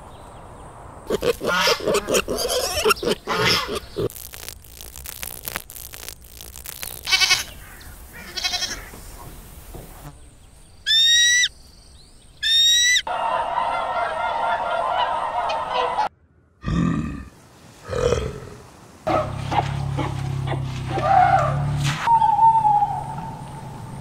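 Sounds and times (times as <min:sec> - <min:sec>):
goats bleating: 0:01.1 - 0:04.2, 0:07.0 - 0:07.5, 0:08.2 - 0:08.9.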